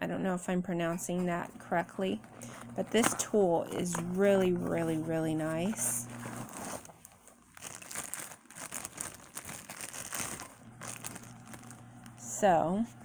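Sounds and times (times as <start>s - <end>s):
handling rustles and clicks: 2.2s - 12.2s.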